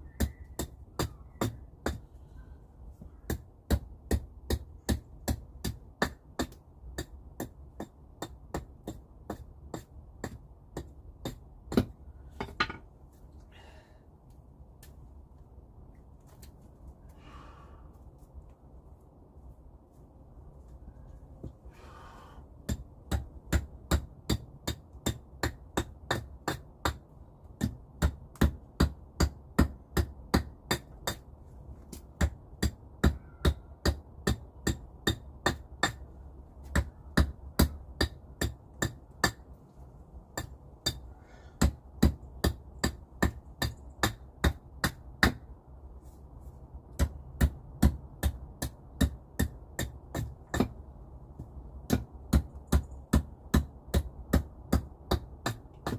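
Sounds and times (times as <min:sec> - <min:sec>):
rapid hammering strikes: 0:46.9 - 0:50.8, 0:51.9 - 0:55.9.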